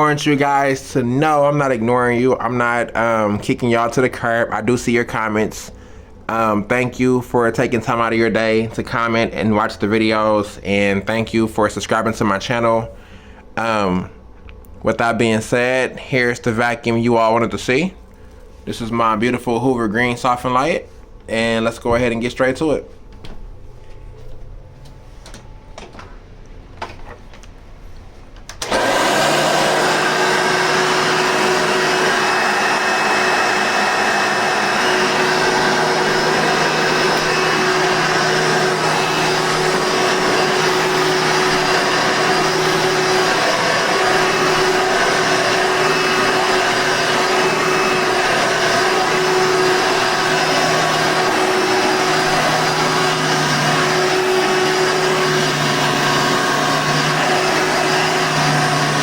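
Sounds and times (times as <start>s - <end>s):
vacuum cleaner running: 0.0s - 10.6s, 28.5s - 59.0s.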